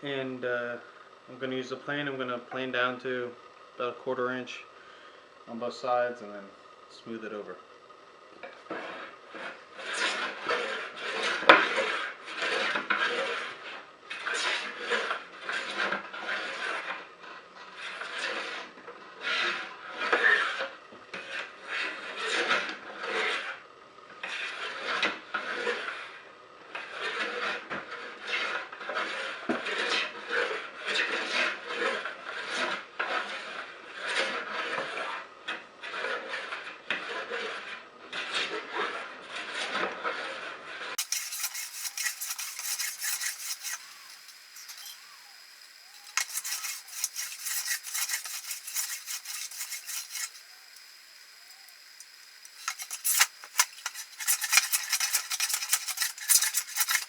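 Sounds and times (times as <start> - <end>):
hand plane shaving wood: 41.0 - 57.0.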